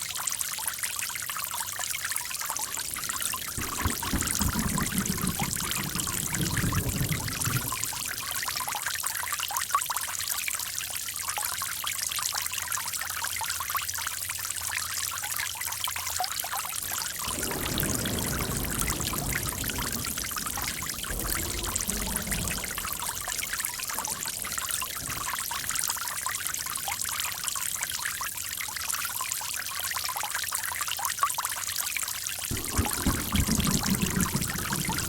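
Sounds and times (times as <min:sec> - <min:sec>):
water trickling and pouring: 0:00.0 - 0:35.0
deep water gurgle: 0:02.3 - 0:08.8, 0:16.8 - 0:28.3, 0:32.5 - 0:35.0.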